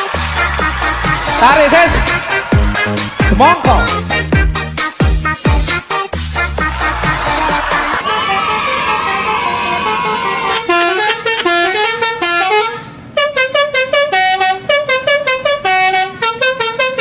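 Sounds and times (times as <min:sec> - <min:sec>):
bus multi-tone horn tune: 0:06.4 - 0:17.0.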